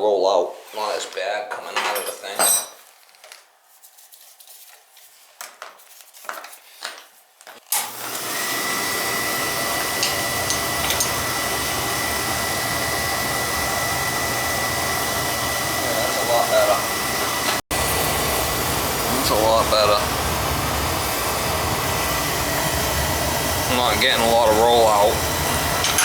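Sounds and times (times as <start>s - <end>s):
oil burner blower and flame: 7.7s - 26.0s.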